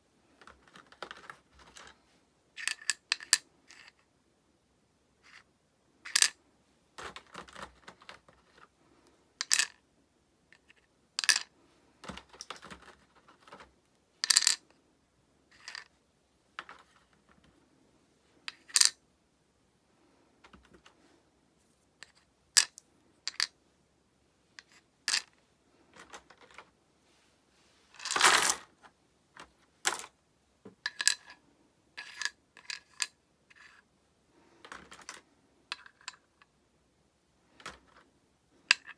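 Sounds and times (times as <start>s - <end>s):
plastic pieces clicking: 9.4s - 9.8s, 14.2s - 14.6s.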